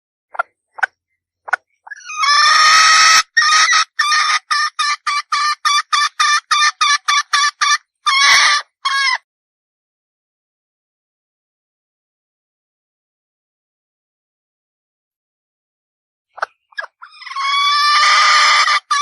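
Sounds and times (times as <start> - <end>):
hen clucking: 0.4 - 9.2, 16.4 - 19.0
hen calling: 1.9 - 9.2, 16.4 - 19.0.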